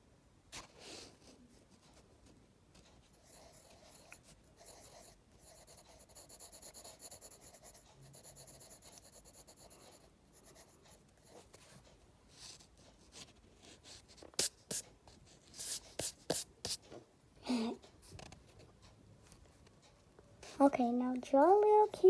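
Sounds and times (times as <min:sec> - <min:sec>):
pencil scratching on paper: 0:02.8 - 0:16.8.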